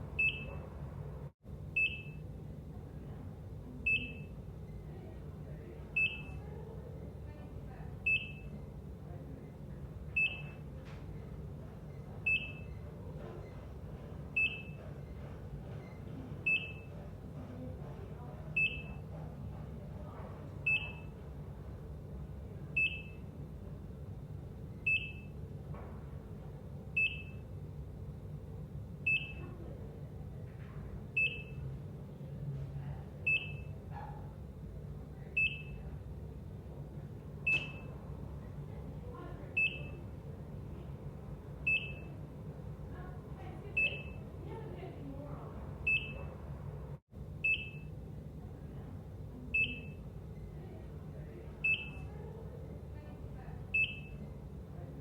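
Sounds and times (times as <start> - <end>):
heart monitor beeping: 0.1 - 0.7, 1.8 - 2.3, 3.8 - 4.5, 5.9 - 6.4, 8.0 - 8.7, 10.0 - 21.4, 22.8 - 23.4, 24.7 - 25.4, 26.9 - 27.5, 29.0 - 29.5, 31.1 - 31.7, 33.2 - 34.4, 35.4 - 36.0, 37.4 - 38.0, 39.5 - 40.1, 41.6 - 42.2, 43.7 - 44.3, 45.8 - 46.4, 47.4 - 48.0, 49.5 - 50.2, 51.6 - 52.1, 53.7 - 54.4.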